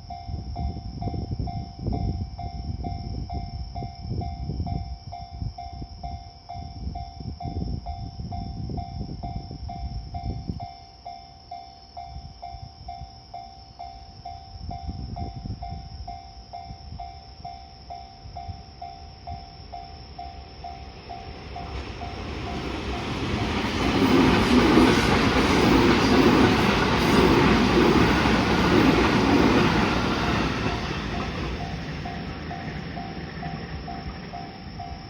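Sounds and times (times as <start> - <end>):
train passing loudly: 20.1 - 35.0.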